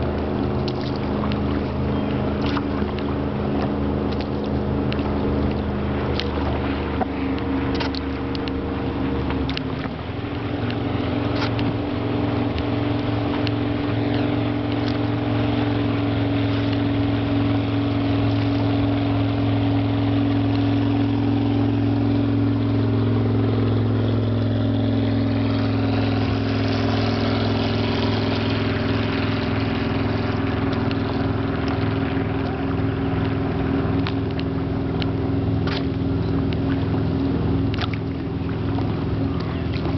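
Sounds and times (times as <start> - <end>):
boat motor running: 0.0 - 39.9
water noise: 0.0 - 39.9.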